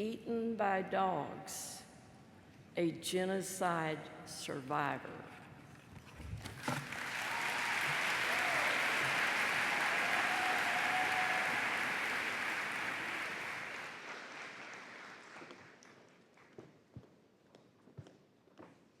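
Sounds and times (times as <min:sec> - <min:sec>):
audience applauding: 0:06.6 - 0:16.1.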